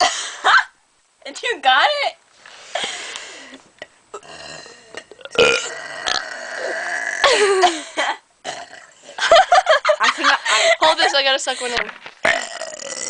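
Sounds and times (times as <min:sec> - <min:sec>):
loud burp: 0:04.1 - 0:07.7, 0:08.4 - 0:09.0, 0:12.2 - 0:13.0.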